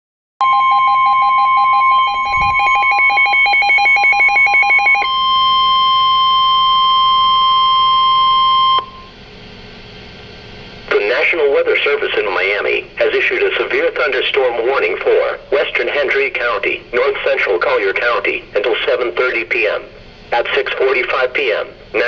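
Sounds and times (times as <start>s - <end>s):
high emergency alert tone: 0.4s - 9.1s
rapidly pulsing beep: 0.4s - 9.1s.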